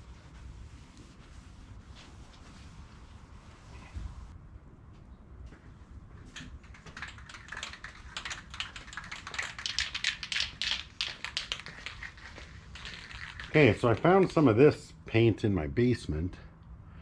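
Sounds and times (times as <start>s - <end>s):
spray can ball rattling: 6.6s - 14.1s.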